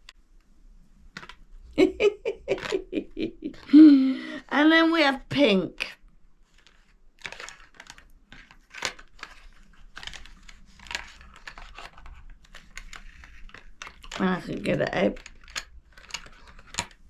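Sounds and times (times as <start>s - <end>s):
packaging clicking and crinkling: 1.1s - 1.5s, 6.5s - 17.0s.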